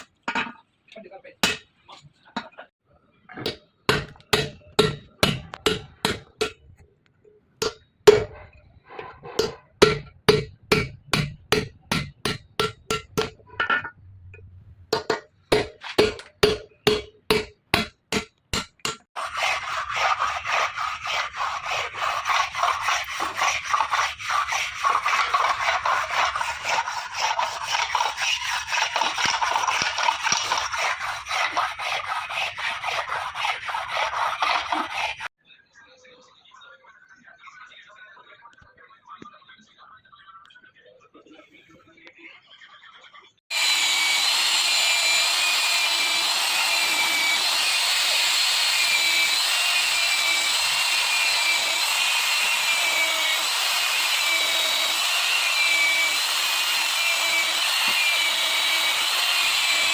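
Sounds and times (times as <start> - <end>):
sharp hammering taps: 3.4 - 6.6, 9.4 - 13.4, 15.0 - 19.1
rasping scrape of filing metal: 18.8 - 35.3, 43.5 - 59.9.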